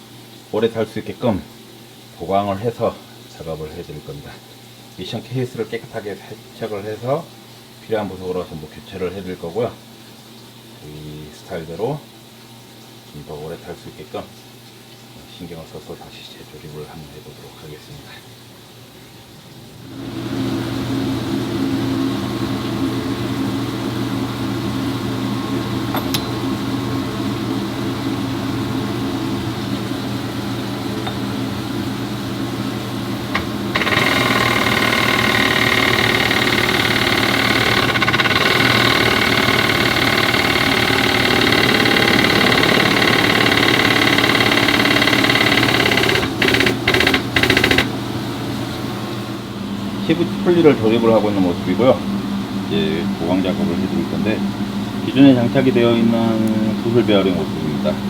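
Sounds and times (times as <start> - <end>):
machine motor humming: 28.3 - 48.9
high multi-tone whine: 33.3 - 47.9.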